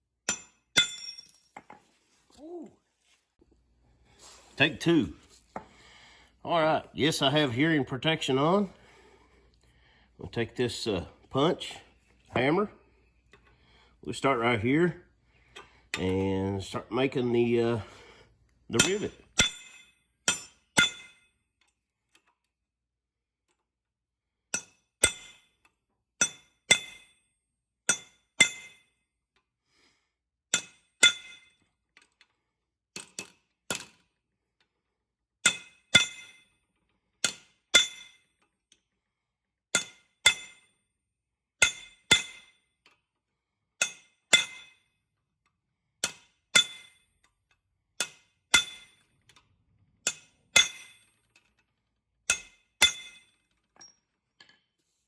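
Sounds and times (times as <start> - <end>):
hammer striking metal punch: 0.3 - 1.4, 18.8 - 21.2, 24.6 - 25.4, 26.2 - 27.1, 27.9 - 28.8, 30.6 - 31.5, 35.5 - 36.4, 37.2 - 38.2, 39.8 - 40.6, 41.6 - 42.6, 43.8 - 44.8, 46.0 - 47.0, 48.0 - 49.0, 50.0 - 51.2, 52.3 - 53.4.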